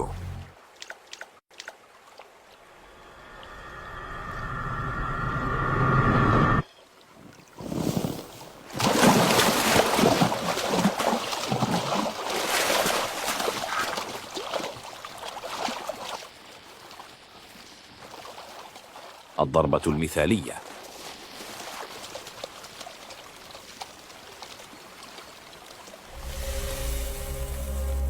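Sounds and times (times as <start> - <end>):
water splashing and churning: 0.0 - 3.1, 6.8 - 19.4, 20.6 - 28.0.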